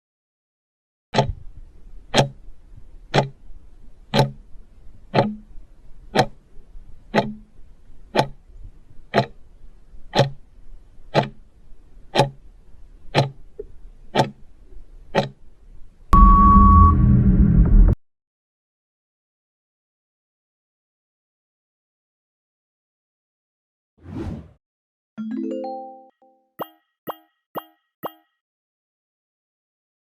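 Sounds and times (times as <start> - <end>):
countdown clock ticking: 1.2 - 3.5, 4.1 - 4.5, 5.1 - 6.5, 7.1 - 8.5, 9.1 - 9.4, 10.1 - 11.5, 12.1 - 12.5, 13.1 - 13.5, 14.1 - 14.4, 15.1 - 15.4, 25.2 - 28.4
held beep tone: 16.2 - 17.0.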